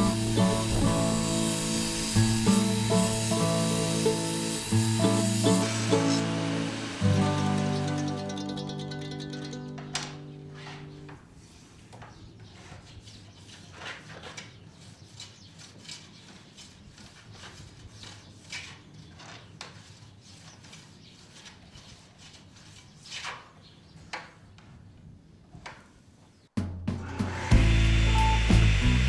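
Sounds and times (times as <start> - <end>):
light knocks and scrapes: 10.5 - 24.4.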